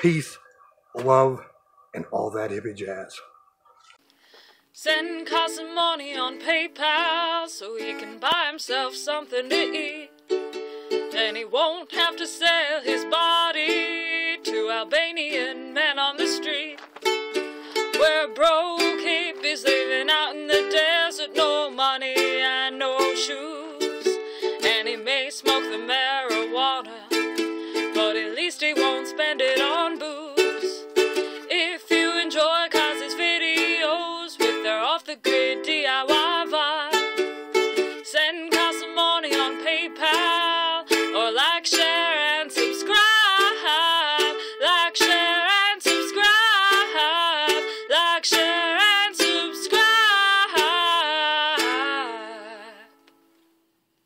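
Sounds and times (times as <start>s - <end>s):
ukulele strumming: 4.9s - 53.3s.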